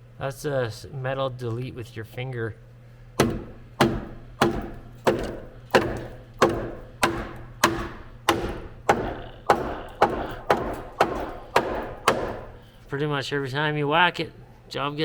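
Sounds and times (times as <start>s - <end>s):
hammer blows on steel frame: 3.2s - 12.8s.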